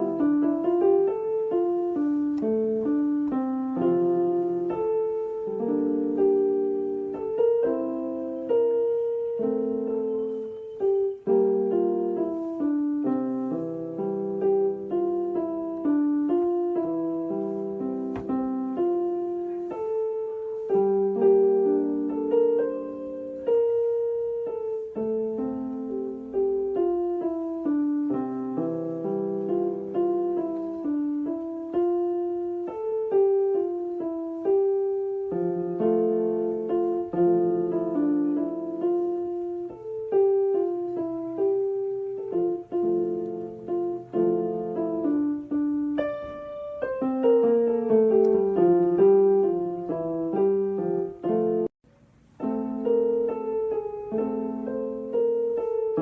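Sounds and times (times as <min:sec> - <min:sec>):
gentle piano music: 0:00.0 - 0:56.0.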